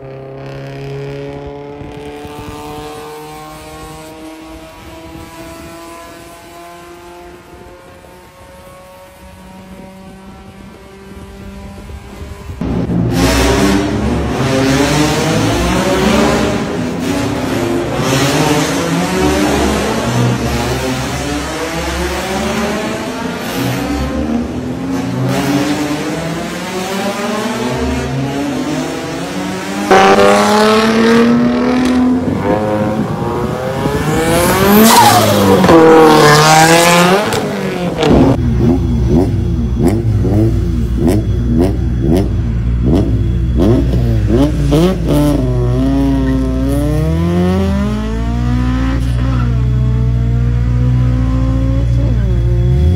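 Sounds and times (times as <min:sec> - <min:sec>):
car engine revving hard: 0:12.8 - 0:52.9.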